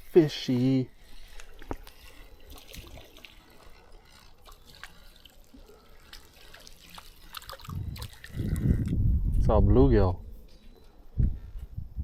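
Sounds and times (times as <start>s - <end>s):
river water trickling: 0.0s - 9.0s
small scattered ticks: 0.0s - 9.0s.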